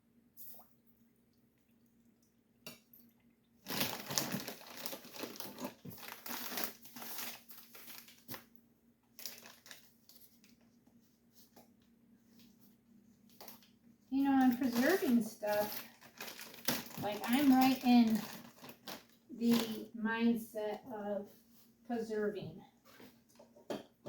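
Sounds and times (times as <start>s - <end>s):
sugar bag crinkling: 3.6s - 8.5s, 9.2s - 10.6s, 13.4s - 19.9s.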